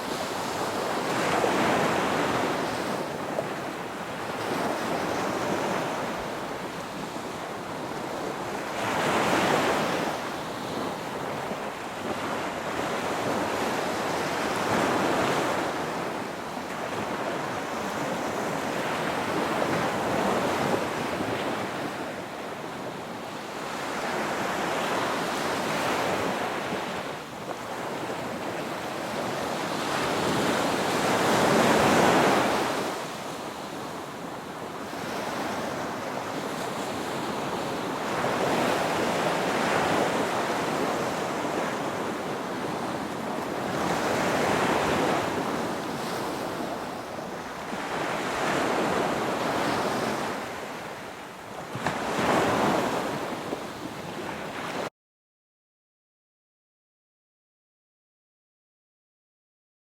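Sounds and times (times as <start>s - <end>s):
ocean waves breaking: 23.6s - 54.9s.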